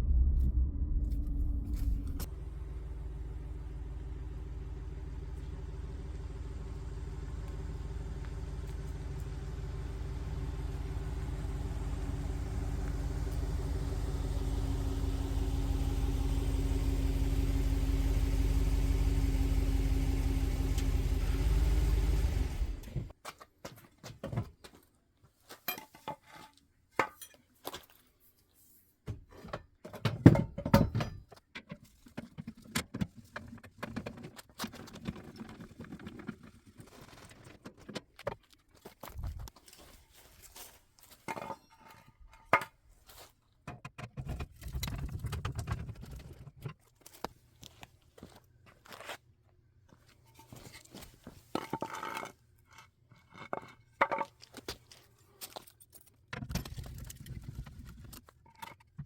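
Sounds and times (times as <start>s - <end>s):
vehicle engine running: 0.0s - 23.1s.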